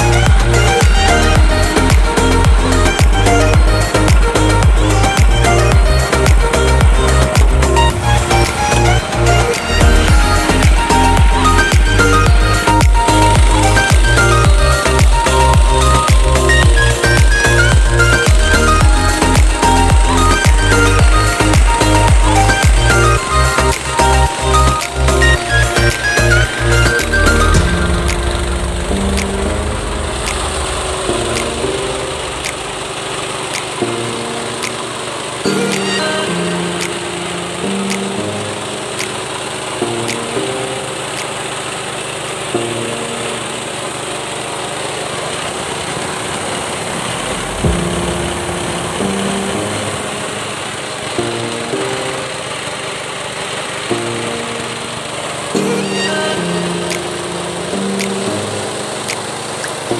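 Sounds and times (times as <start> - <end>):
sustained synth notes: 0.0 - 59.9
kick drum beat: 0.3 - 7.6, 9.8 - 22.8
rice milling machine whirring: 20.7 - 55.6.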